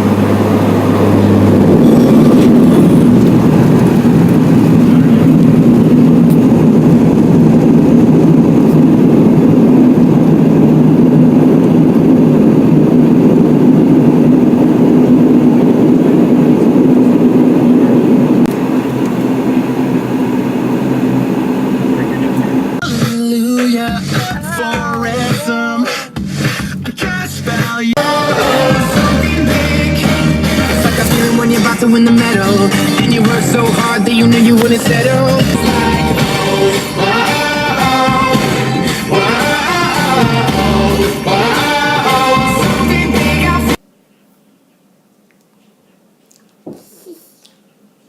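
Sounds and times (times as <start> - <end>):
vehicle engine hum: 0.0 - 43.8
road rush in cabin: 0.0 - 43.9
music: 22.8 - 43.8.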